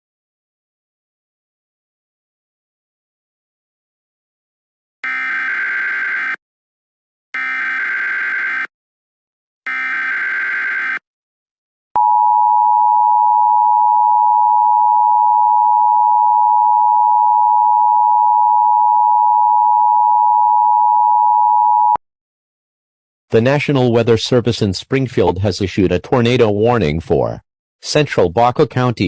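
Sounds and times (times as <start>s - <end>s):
raspy digital data bursts: 9.7s - 11.0s.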